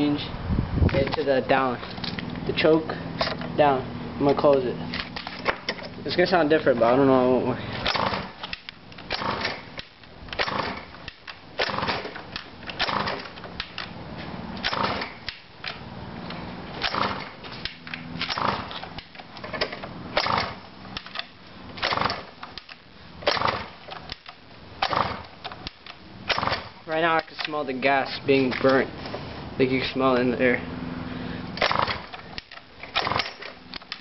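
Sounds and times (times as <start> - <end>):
small engine cranking: 7.7 - 27.8, 31.4 - 34.0.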